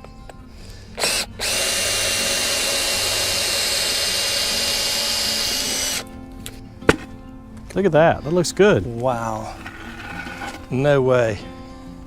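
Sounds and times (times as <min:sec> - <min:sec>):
electric drill whining: 0:01.0 - 0:06.0.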